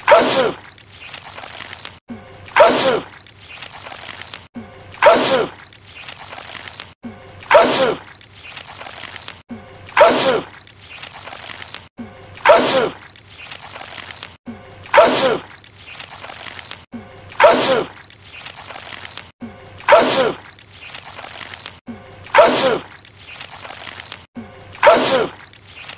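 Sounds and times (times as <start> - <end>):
man sneezing: 0.0 - 0.6, 19.9 - 20.4, 24.8 - 25.4.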